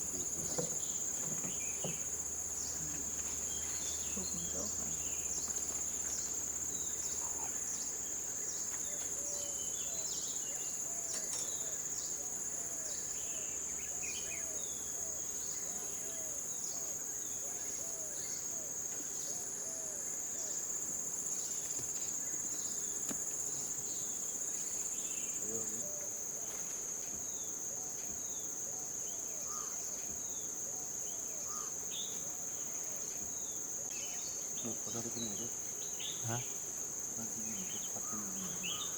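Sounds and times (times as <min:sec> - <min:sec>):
low repeated animal calls: 0:00.0 - 0:08.2, 0:37.2 - 0:38.9
pulsing insect: 0:00.0 - 0:38.9
high-pitched insect drone: 0:37.2 - 0:38.9.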